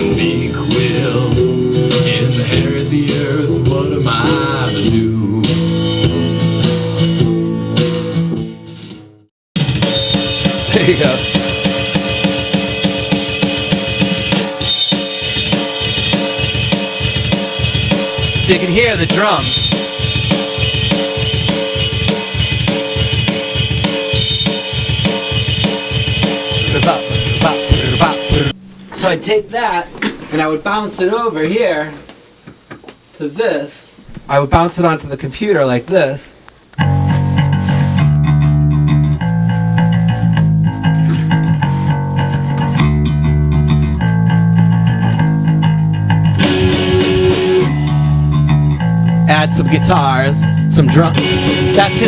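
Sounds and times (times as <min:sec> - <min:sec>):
instrumental rock music: 0:00.0 - 0:29.2, 0:36.7 - 0:52.0
kick drum and snare beat: 0:09.6 - 0:28.6.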